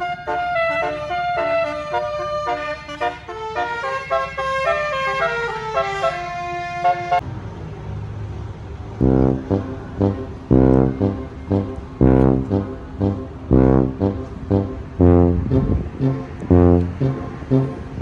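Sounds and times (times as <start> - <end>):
multi-tone bus horn melody: 0.0 - 7.2, 9.0 - 18.0
deep horn blasts: 9.0 - 18.0
low rumble: 9.0 - 18.0.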